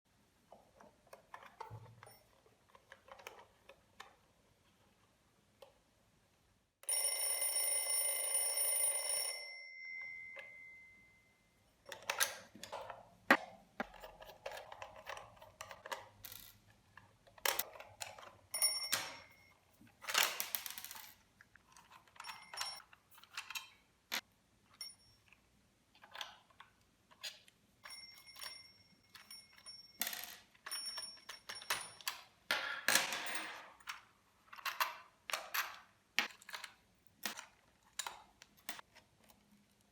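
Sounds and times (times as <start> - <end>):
alarm clock bell ringing: 6.8 - 11.4, 18.5 - 19.5, 22.2 - 22.8.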